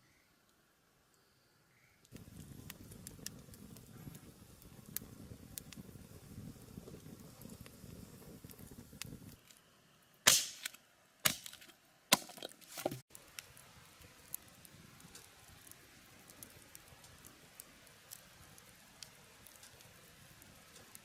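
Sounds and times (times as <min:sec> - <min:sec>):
sharp cracking impacts: 0:10.3 - 0:13.0.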